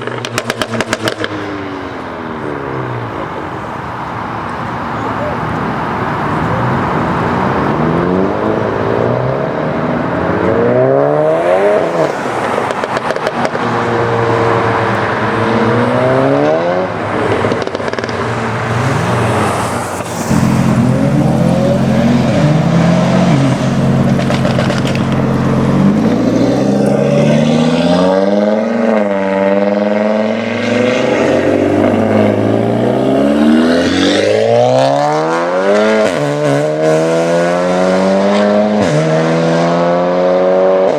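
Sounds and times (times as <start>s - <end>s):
exhaust pops and crackles: 0.0s - 7.7s, 12.3s - 14.0s, 17.1s - 27.0s
car engine accelerating hard: 0.0s - 40.9s.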